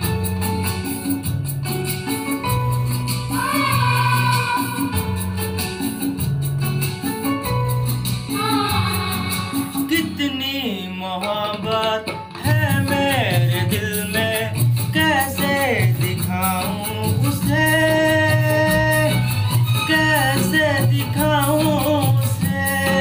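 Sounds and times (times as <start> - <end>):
instrumental accompaniment: 0.0 - 23.0
person singing: 3.2 - 5.8, 8.3 - 23.0.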